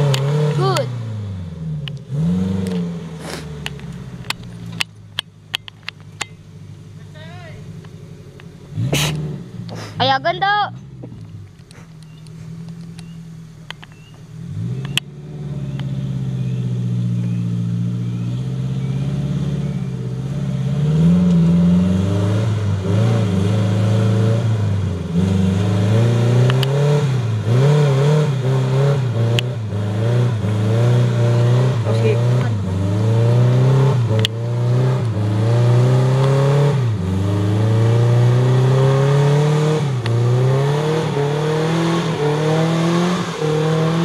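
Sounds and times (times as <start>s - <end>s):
car engine revving: 0.0s - 44.0s
sharp clicks and knocks: 3.6s - 6.4s, 11.0s - 14.2s.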